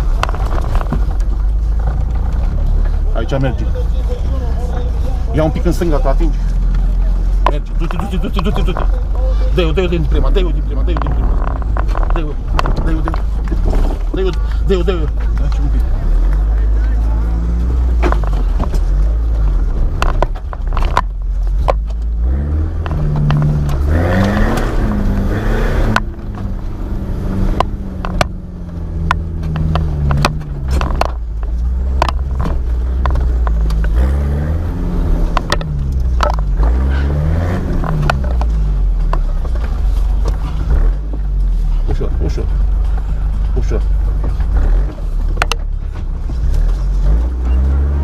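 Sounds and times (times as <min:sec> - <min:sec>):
sharp knocks and clatter: 0:00.0 - 0:02.9, 0:10.2 - 0:14.4, 0:17.9 - 0:22.1, 0:27.5 - 0:34.2, 0:35.1 - 0:36.8, 0:37.7 - 0:41.5
off-road vehicle engine revving: 0:00.0 - 0:48.0.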